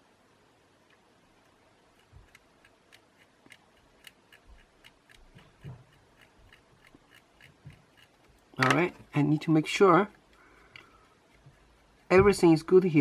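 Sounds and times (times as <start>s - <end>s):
small tool ticking: 0.7s - 9.2s.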